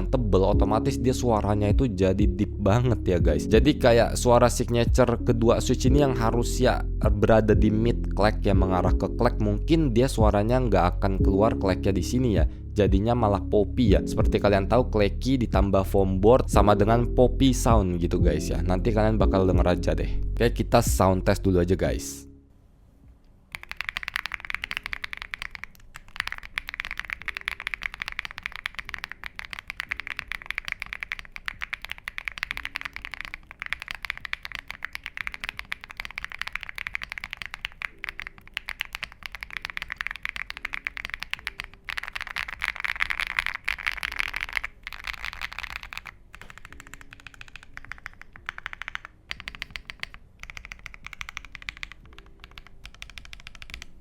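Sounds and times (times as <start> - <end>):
mechanical keyboard typing: 23.5 - 54.0.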